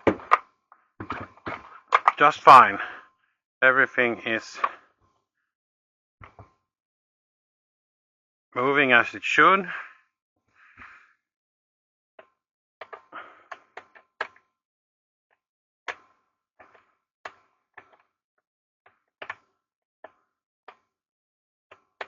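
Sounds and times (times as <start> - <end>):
chainsaw parts clicking and knocking: 1.0 - 2.3.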